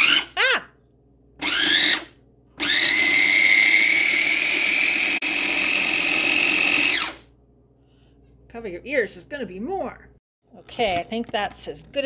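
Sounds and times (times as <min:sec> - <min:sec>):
electric food chopper grinding: 0:00.0 - 0:00.4, 0:01.4 - 0:07.3.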